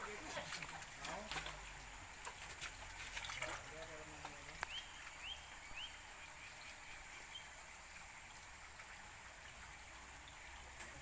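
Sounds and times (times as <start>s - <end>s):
steady outdoor hiss: 0.0s - 11.0s
small bird chirping: 4.6s - 7.5s.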